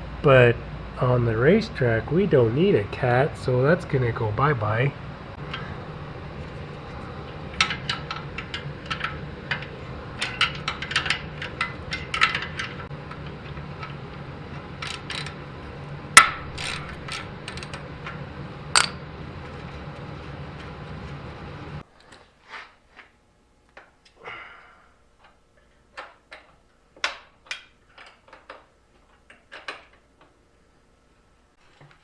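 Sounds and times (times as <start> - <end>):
metal tools clinking: 16.2 - 17.8.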